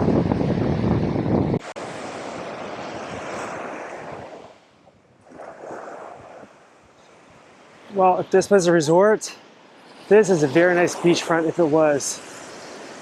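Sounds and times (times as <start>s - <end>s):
wind buffeting microphone: 0.0s - 8.6s
surf washing on beach: 0.0s - 13.0s.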